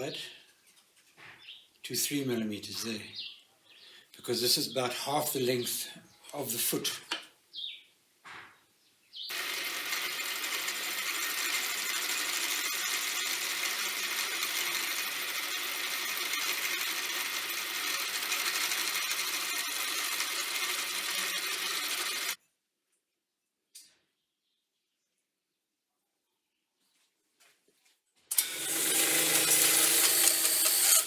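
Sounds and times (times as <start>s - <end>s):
power tool running under load: 9.3s - 22.4s, 28.3s - 31.0s.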